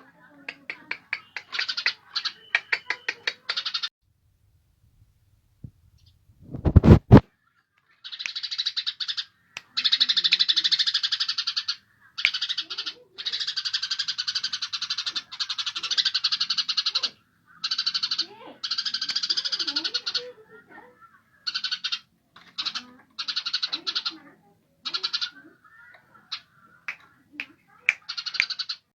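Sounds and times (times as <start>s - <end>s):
faint bird chirps and calls: 0.0s - 3.9s, 5.8s - 28.9s
songbird rattling trills: 0.6s - 3.9s, 8.0s - 20.3s.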